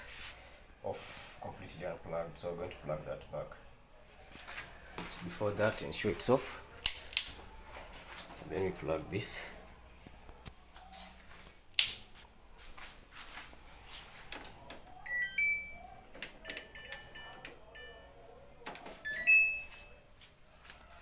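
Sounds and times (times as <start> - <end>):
washer control panel beeping: 15.0 - 18.0.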